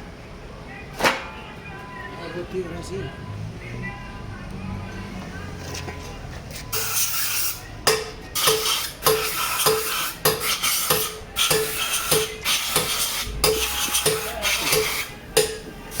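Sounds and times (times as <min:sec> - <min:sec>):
metal tool striking metal: 0:07.9 - 0:15.7.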